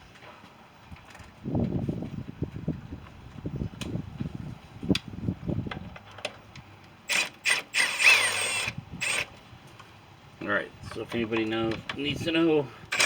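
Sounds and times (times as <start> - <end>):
cordless drill whirring: 7.1 - 9.3.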